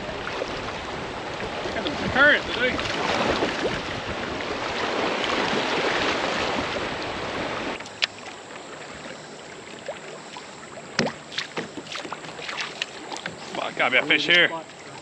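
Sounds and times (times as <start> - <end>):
creek water rushing: 0.0 - 15.0.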